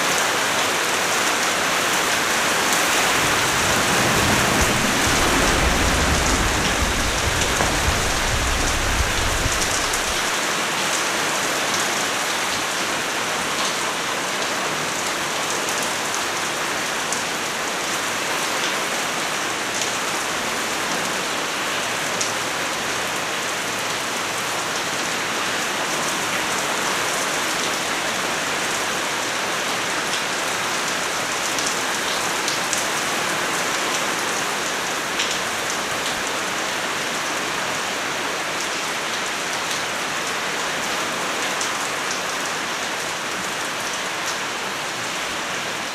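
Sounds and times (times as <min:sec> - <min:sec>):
rain pattering: 0:00.0 - 0:45.9
thunder rumble: 0:02.2 - 0:10.4.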